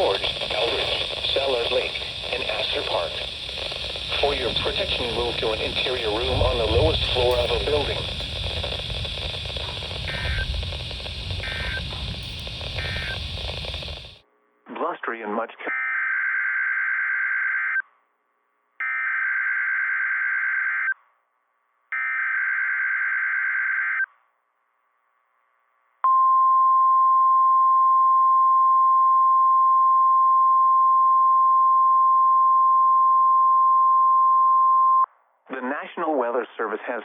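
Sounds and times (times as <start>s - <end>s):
steady warning alarm tone: 0.0s - 14.2s
warbling digital data tones: 0.0s - 14.2s.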